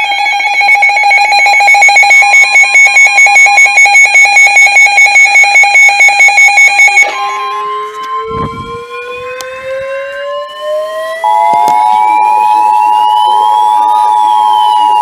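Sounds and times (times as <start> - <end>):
two-tone attention signal: 0.0 - 7.6
siren wailing: 0.0 - 15.0
steady warning tone: 0.0 - 15.0.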